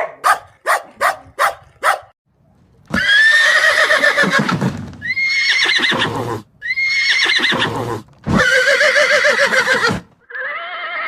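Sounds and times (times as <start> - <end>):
horse neighing: 2.9 - 11.0.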